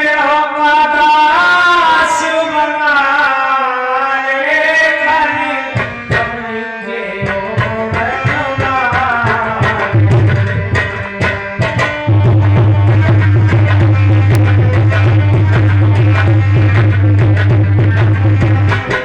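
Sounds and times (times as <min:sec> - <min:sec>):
tabla playing: 0:00.0 - 0:19.0
held melodic line: 0:10.0 - 0:19.0.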